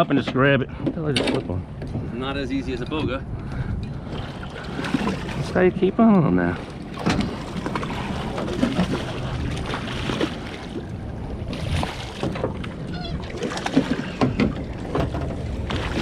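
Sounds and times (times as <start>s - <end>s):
boat engine rumble: 0.0s - 16.0s
water splashing: 4.0s - 16.0s.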